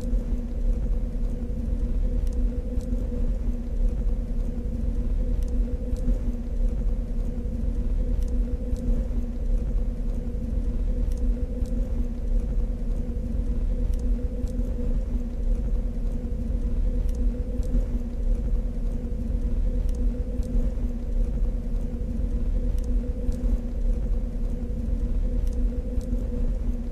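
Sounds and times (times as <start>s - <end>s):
deep steady rumble: 0.0s - 26.9s
two-note electrical hum: 0.0s - 26.9s.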